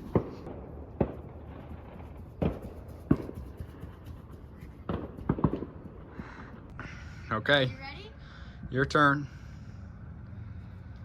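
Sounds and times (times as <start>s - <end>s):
distant fireworks bangs: 0.0s - 3.4s, 4.8s - 6.4s.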